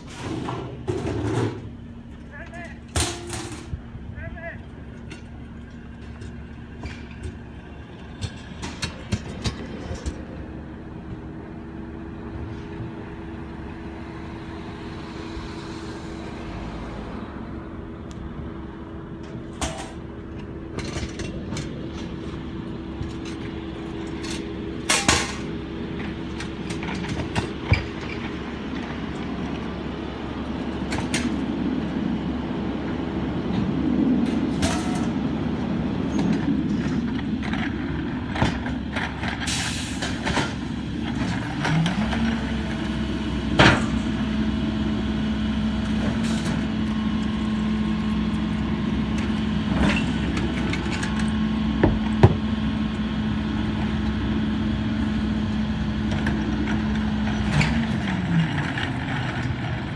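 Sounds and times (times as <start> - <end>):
garbage truck diesel engine: 0.0 - 59.9
sharp metallic clanks: 2.9 - 3.8.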